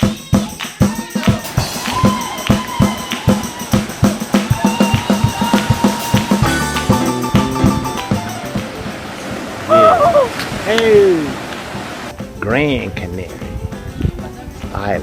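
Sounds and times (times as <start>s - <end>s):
drum and tambourine beat: 0.0s - 8.9s
held melody line: 4.3s - 9.4s.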